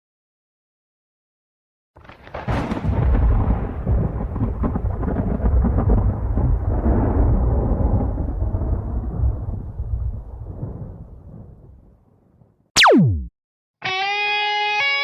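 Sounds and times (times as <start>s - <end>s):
fireworks booming and crackling: 2.0s - 9.0s.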